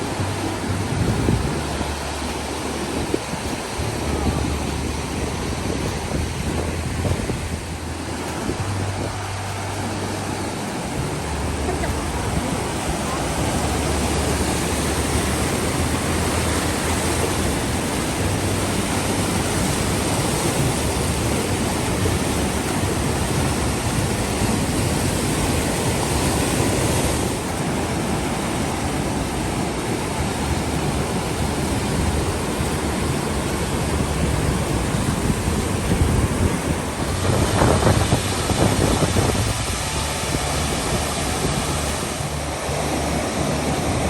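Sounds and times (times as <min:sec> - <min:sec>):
waterfall rushing: 0:00.0 - 0:44.0.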